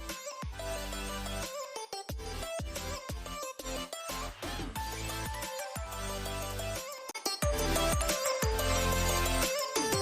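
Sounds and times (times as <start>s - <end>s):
music with bass and drums: 2.1s - 3.4s, 4.1s - 6.8s, 7.4s - 10.0s.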